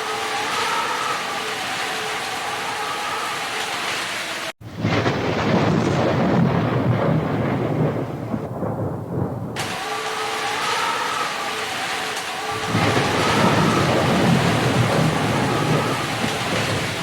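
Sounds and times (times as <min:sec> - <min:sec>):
heavy rain hiss: 0:00.0 - 0:17.0
rolling thunder rumble: 0:04.6 - 0:11.2, 0:12.4 - 0:17.0.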